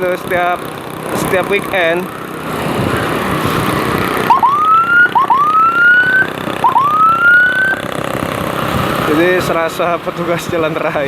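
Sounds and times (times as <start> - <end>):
engine and road noise: 0.0 - 11.0
electronic siren whooping: 3.3 - 7.9.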